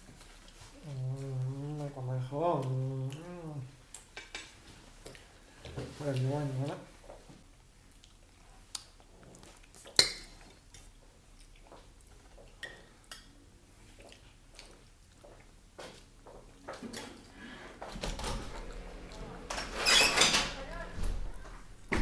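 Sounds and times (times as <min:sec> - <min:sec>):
cutlery clinking against plates: 0:04.0 - 0:04.6.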